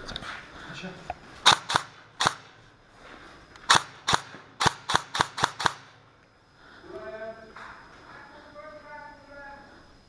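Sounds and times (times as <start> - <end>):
airsoft gun shots: 1.4 - 2.6, 3.6 - 6.0.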